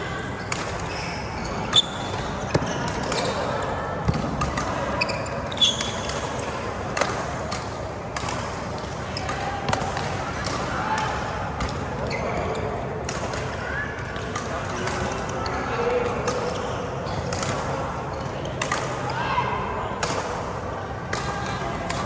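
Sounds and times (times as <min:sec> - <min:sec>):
shoes squeaking on court floor: 0:00.4 - 0:06.4
racket hitting shuttlecock: 0:01.5 - 0:05.0, 0:05.6 - 0:11.9.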